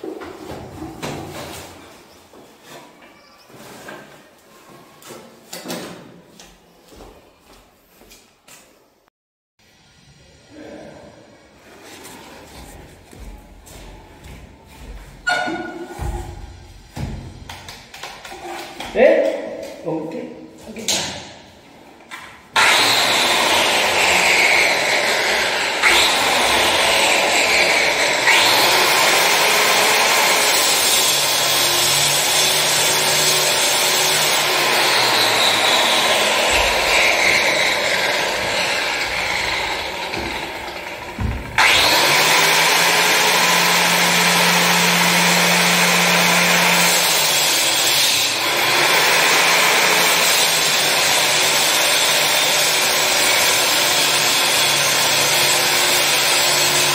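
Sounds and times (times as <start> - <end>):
electric cutting tool running: 22.6 - 56.9.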